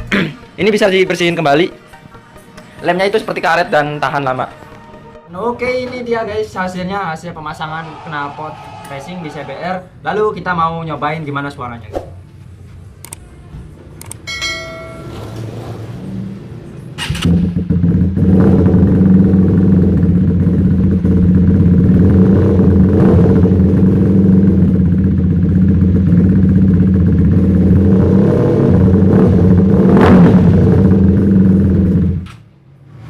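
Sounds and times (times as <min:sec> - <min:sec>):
motorcycle engine idling: 0:17.3 - 0:22.8, 0:23.4 - 0:27.8.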